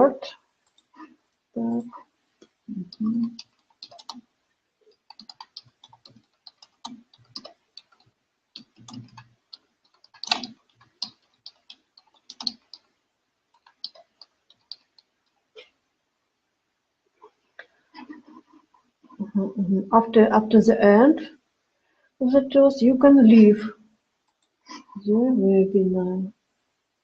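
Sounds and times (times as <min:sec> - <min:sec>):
typing on computer keyboard: 0:02.9 - 0:04.2, 0:04.9 - 0:12.9, 0:13.5 - 0:15.1.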